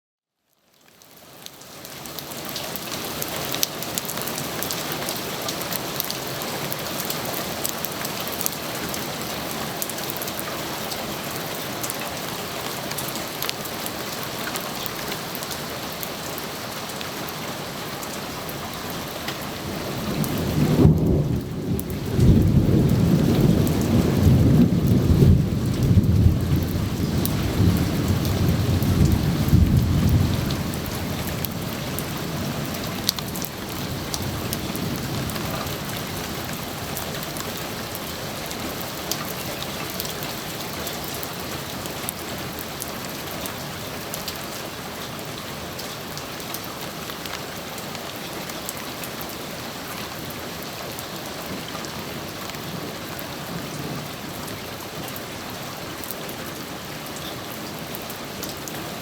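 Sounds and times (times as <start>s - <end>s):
steady rain falling: 0.4s - 59.0s
thunder rumbling: 19.6s - 38.6s.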